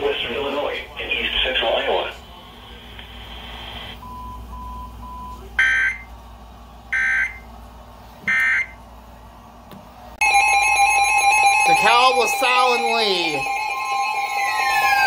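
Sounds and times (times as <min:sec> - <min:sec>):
two-tone attention signal: 0:10.2 - 0:15.0
screeching data bursts: 0:11.6 - 0:15.0.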